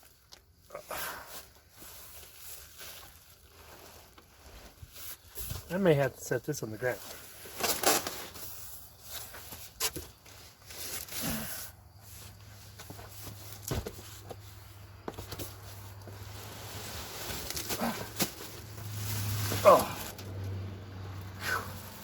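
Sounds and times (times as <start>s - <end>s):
shuffling: 12.0s - 20.3s
packing rustling: 12.6s - 20.3s.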